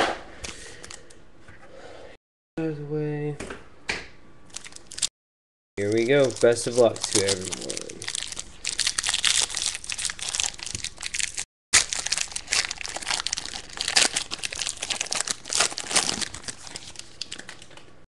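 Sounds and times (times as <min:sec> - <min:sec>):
wrapper tearing and crinkling: 0:04.5 - 0:05.1, 0:05.8 - 0:17.8.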